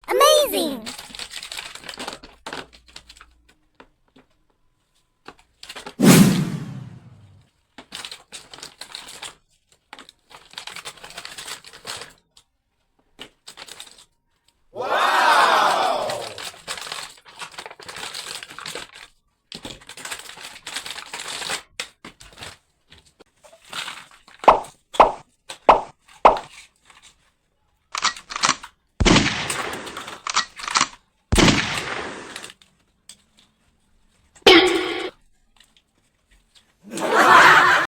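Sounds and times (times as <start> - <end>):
plastic toy clicks and knocks: 28.0 - 28.7
toy gun electronic sounds: 34.5 - 35.1.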